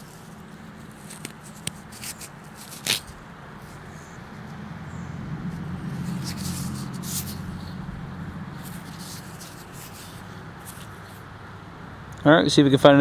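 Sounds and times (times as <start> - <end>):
rustling: 0.0 - 4.5, 5.5 - 11.3
low motor hum: 3.3 - 10.6.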